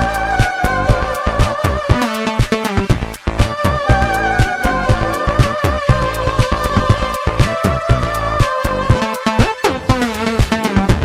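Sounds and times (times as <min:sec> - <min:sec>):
drum-like hits: 0:03.4 - 0:08.1
sustained synth tones: 0:03.5 - 0:08.4
downward synth pitch sweep: 0:03.6 - 0:08.2.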